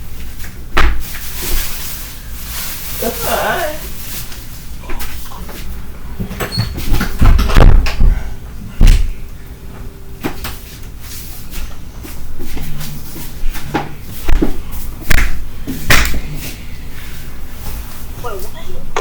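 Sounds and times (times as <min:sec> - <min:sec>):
loud thumps and knocks: 0:06.2 - 0:08.2, 0:08.8 - 0:09.1.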